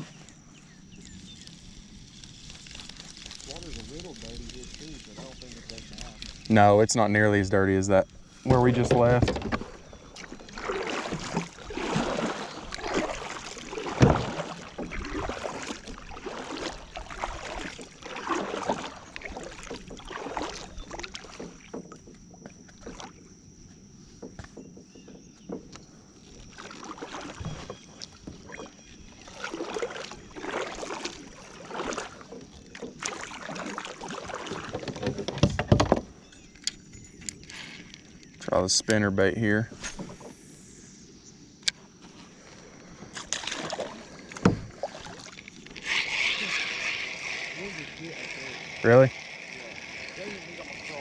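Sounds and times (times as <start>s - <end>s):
paddle swishes and splashes: 8.3s - 23.2s, 26.2s - 36.3s, 42.0s - 51.0s
knocks against hull: 8.5s - 16.8s, 24.1s - 25.9s, 29.6s - 36.2s, 43.1s - 45.4s.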